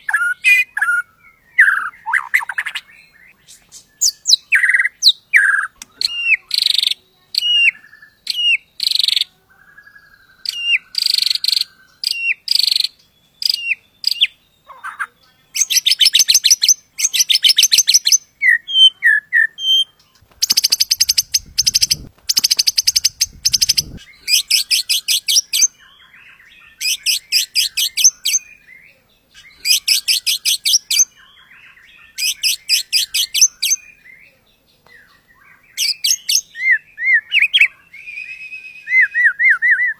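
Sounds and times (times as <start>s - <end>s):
bird singing whistled notes: 0.0s - 39.9s
bird rattling trills: 20.2s - 25.6s.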